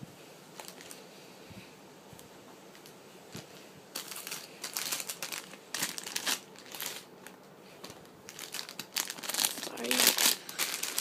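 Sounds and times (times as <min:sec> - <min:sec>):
plastic packaging crinkling: 0:00.6 - 0:01.0, 0:03.9 - 0:11.0.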